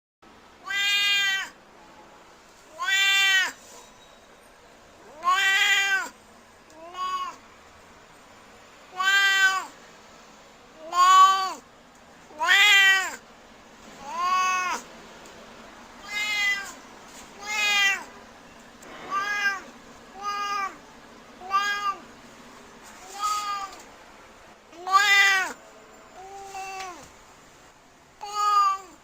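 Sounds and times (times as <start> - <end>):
cat meowing: 0.6 - 1.6, 2.7 - 3.6, 5.0 - 6.2, 6.8 - 7.4, 8.9 - 9.7, 10.8 - 11.6, 12.3 - 13.2, 14.0 - 14.8, 16.0 - 16.8, 17.4 - 18.1, 19.0 - 20.8, 21.4 - 22.0, 23.0 - 23.8, 24.8 - 25.6, 28.2 - 29.0.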